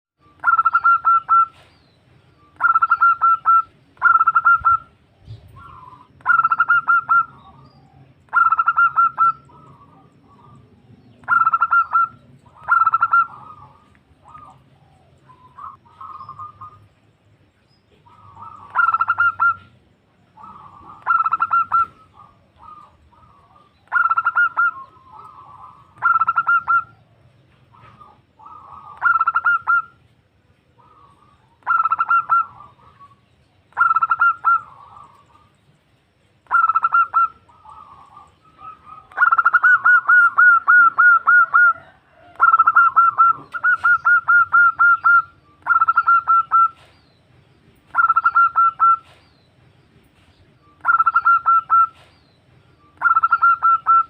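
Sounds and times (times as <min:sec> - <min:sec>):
dove cooing: 0:00.4 - 0:01.7, 0:02.6 - 0:16.9, 0:18.0 - 0:30.0, 0:30.8 - 0:35.6, 0:36.5 - 0:47.0, 0:47.9 - 0:49.2, 0:50.8 - 0:52.1, 0:53.0 - 0:54.0.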